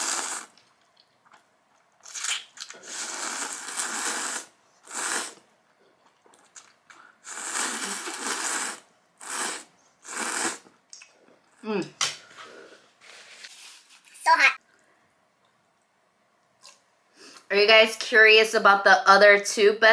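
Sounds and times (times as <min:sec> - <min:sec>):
noodles being slurped: 0:00.0 - 0:00.8, 0:02.0 - 0:05.5, 0:06.2 - 0:11.0.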